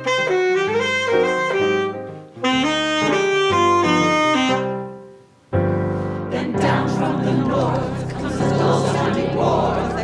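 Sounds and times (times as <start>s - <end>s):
wind instrument melody: 0.0s - 5.2s.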